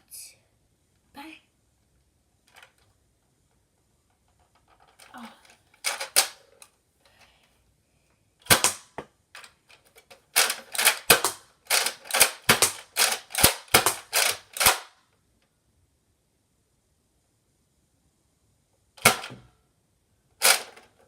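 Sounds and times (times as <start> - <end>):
toy blaster shooting foam darts: 8.4 - 9.0, 10.3 - 15.0, 19.0 - 19.5, 20.4 - 20.8.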